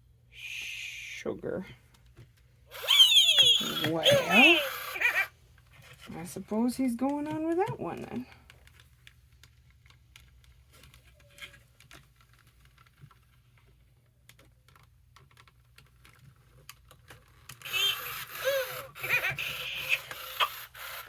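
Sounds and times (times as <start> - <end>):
toy electronic voice warbling: 2.7 - 5.3, 17.6 - 21.0.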